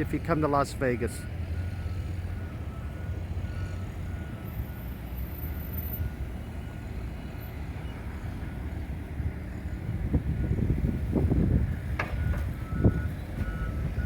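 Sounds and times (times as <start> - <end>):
heavy vehicle engines rumbling: 0.0 - 14.0
street traffic: 0.0 - 14.0
backup alarm beeping: 12.1 - 14.0.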